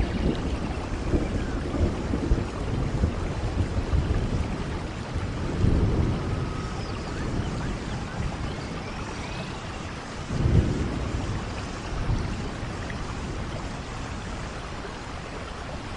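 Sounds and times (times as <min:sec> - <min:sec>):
distant thunder rumble: 0:00.0 - 0:15.9
steady rainfall: 0:00.0 - 0:15.9
faint bird chirps: 0:06.2 - 0:10.2.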